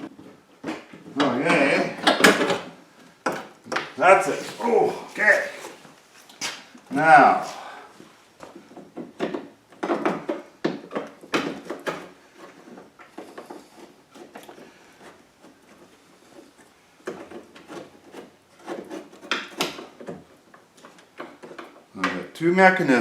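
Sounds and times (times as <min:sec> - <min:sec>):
knocks and clicks of parts: 0:02.0 - 0:04.0, 0:08.4 - 0:14.6
metal and plastic scraping: 0:08.5 - 0:22.2.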